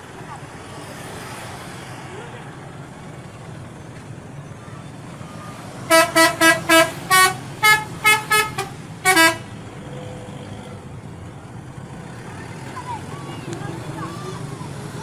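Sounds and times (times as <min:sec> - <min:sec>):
traffic noise: 0:00.0 - 0:15.0
bus musical horn tune: 0:05.9 - 0:09.6.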